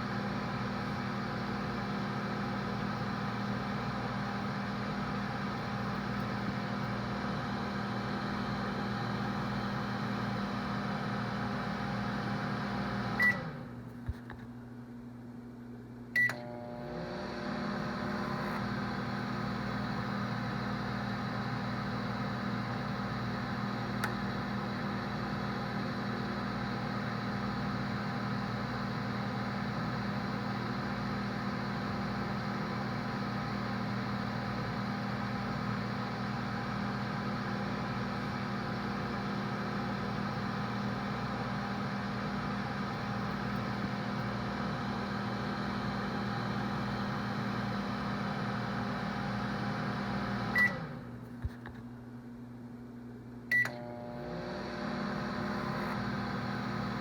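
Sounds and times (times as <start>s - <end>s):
microwave oven hum and fan whir: 0.0s - 57.0s
microwave beep: 8.0s - 13.7s, 16.2s - 16.8s, 50.1s - 51.0s, 53.5s - 54.2s.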